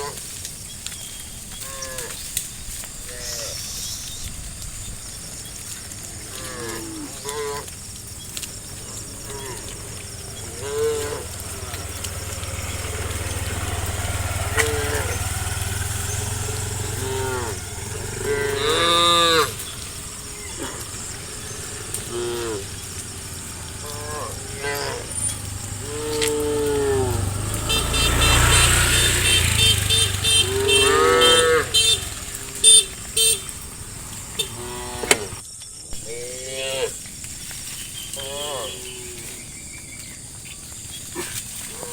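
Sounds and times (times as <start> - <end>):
cattle mooing: 6.0 - 7.8, 8.6 - 35.4, 38.2 - 39.4.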